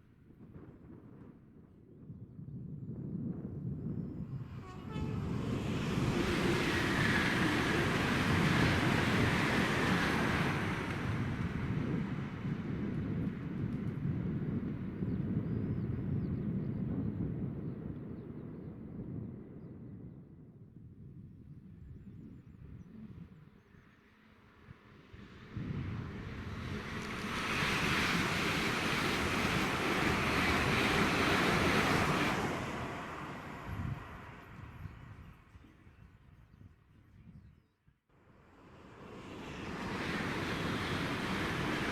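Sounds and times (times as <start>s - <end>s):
train passing at speed: 4.2s - 15.4s, 24.3s - 35.6s, 38.2s - 41.9s.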